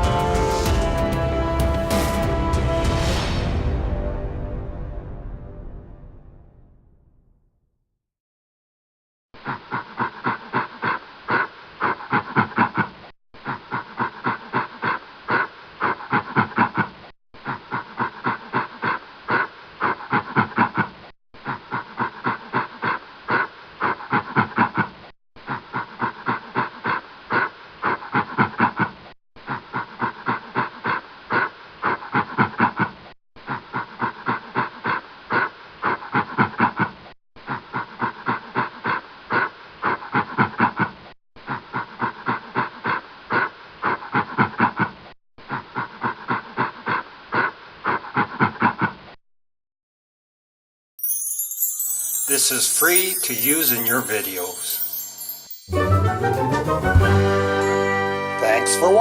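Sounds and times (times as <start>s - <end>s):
gorilla grunting: 9.4s - 49.2s.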